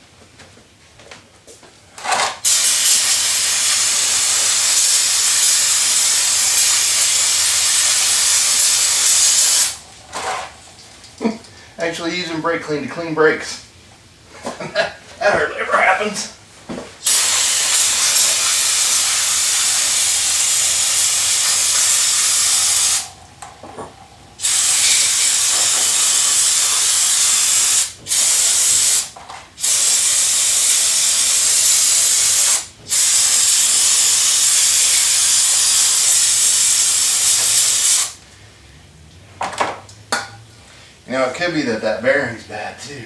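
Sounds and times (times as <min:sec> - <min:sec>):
aerosol spray hissing: 0:02.4 - 0:09.8, 0:17.0 - 0:23.2, 0:24.4 - 0:38.2.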